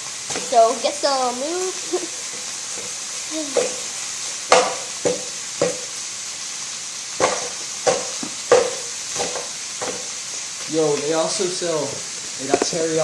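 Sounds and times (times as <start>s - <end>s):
chicken sizzling in oil: 0.0s - 13.0s
utensil knocking and scraping pan: 4.5s - 5.9s, 7.2s - 10.2s.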